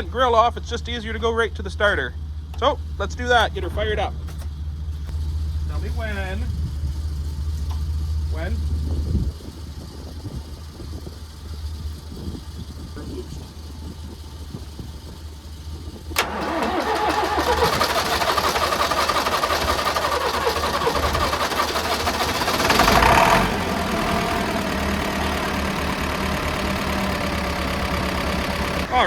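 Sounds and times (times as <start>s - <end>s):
tractor engine idling: 0.0s - 29.0s.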